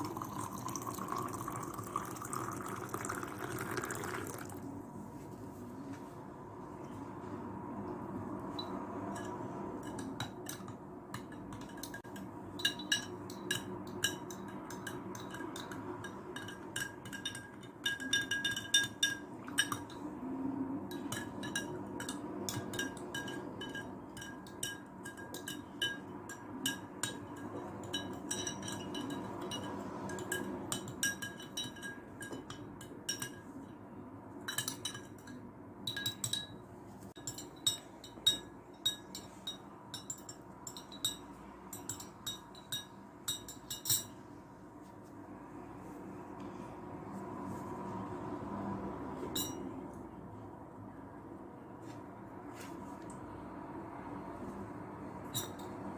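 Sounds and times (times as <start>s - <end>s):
utensil clinking against glass: 0.0s - 4.5s, 8.6s - 20.1s, 34.4s - 36.6s, 37.2s - 44.2s
low background hum: 0.0s - 55.9s.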